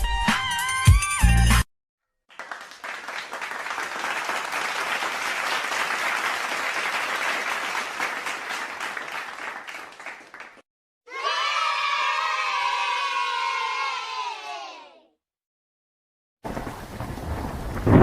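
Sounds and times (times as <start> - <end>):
crowd applause: 2.3 - 10.6.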